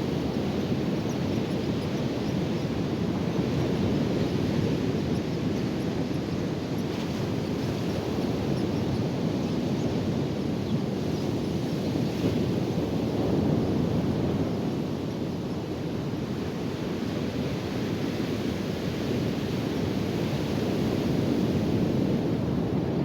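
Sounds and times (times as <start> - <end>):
wind blowing on microphone: 0.0 - 23.0.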